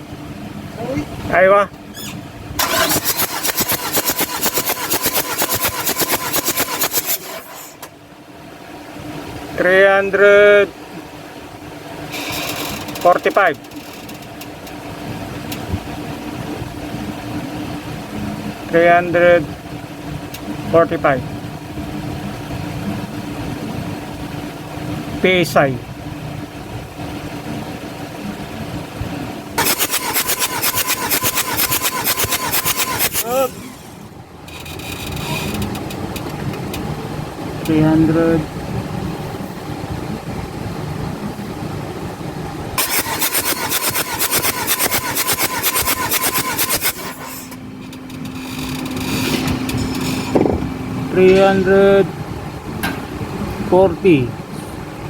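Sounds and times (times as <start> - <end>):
diesel engine cranking: 0.0 - 8.0, 11.5 - 25.2, 25.9 - 53.6
starter motor whine: 2.0 - 7.9, 29.6 - 36.0, 42.8 - 50.6.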